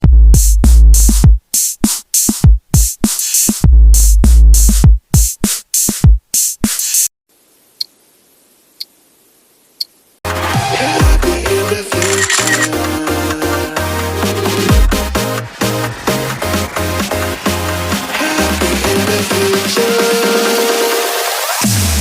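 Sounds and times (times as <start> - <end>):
electronic music with drum machine: 0.3 - 7.0.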